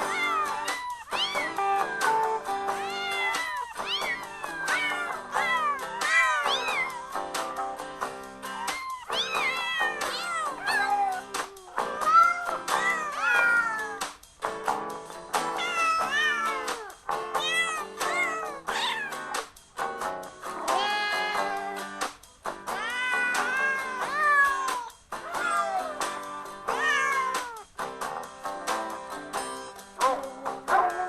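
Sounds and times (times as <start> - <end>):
kitten meowing: 0.0 - 7.0, 8.6 - 14.1, 15.6 - 19.2, 20.8 - 21.8, 22.8 - 26.0, 26.7 - 27.6
guitar music: 0.0 - 31.0.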